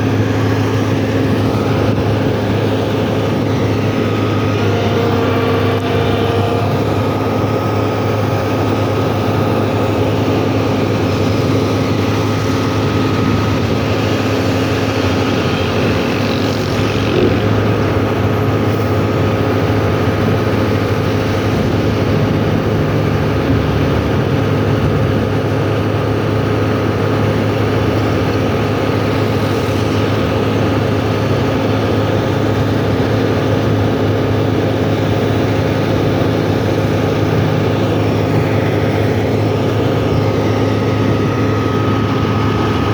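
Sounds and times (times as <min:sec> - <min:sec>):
excavator engine drone: 0:00.0 - 0:42.9
machine whining tones: 0:00.0 - 0:42.9.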